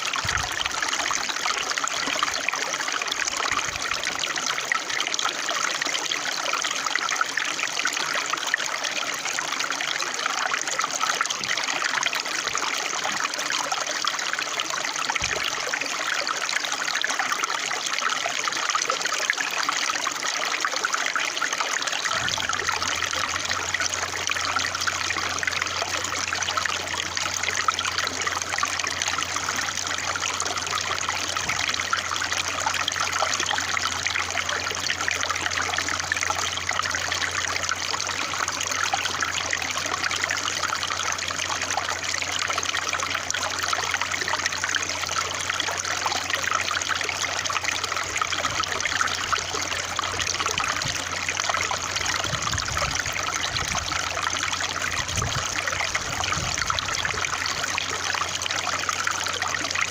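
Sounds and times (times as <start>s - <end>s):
water trickling and splashing: 0.0s - 59.9s
low steady hum: 22.0s - 59.9s.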